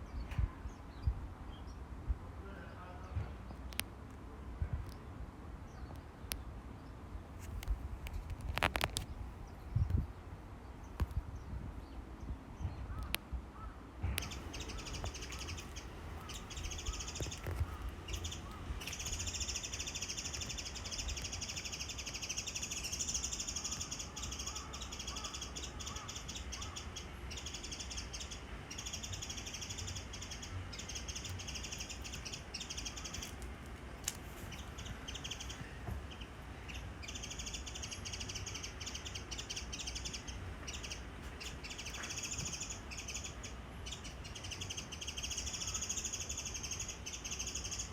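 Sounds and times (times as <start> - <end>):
small birds chirping: 4.8 - 47.9
harsh bird calls: 12.6 - 33.4, 34.5 - 47.9.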